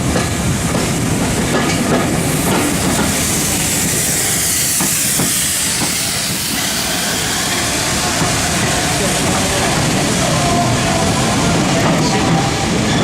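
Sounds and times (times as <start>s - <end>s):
train wheels clicking over rail joints: 0.0s - 10.1s
steam hiss: 0.5s - 12.9s.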